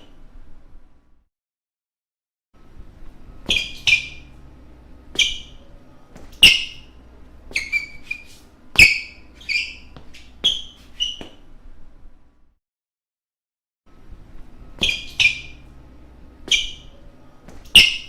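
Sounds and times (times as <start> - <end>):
shoes squeaking on a floor: 3.4 - 4.4, 5.1 - 11.5, 14.8 - 15.7, 16.4 - 18.0.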